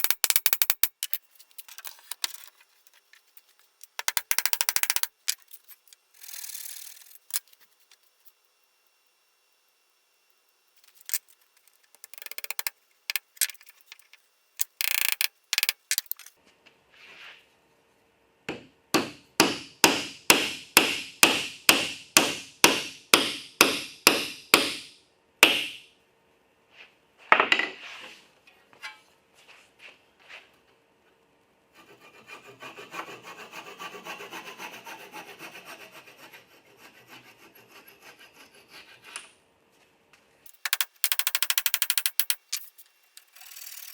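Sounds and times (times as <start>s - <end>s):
hand tools scraping wood: 31.8s - 39.3s.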